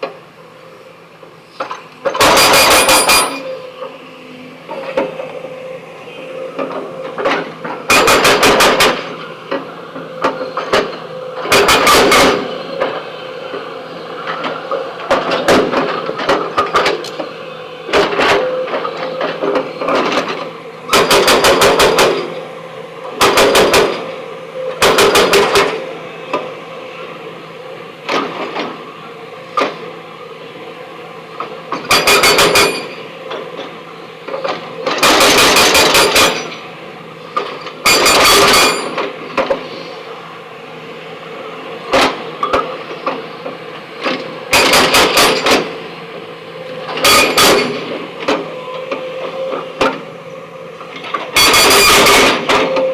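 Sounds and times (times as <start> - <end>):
steady machine hum: 0.0 - 52.9.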